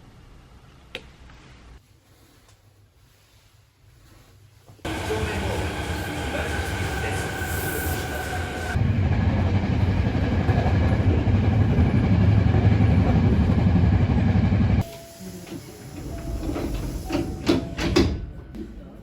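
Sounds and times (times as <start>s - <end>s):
train rumbling on rails: 4.8s - 19.0s.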